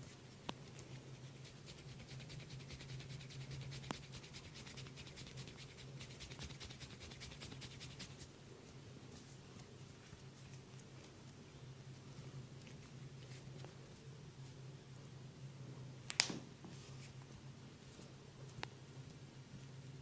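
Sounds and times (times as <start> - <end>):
head massage scratching strokes: 0.0 - 8.3.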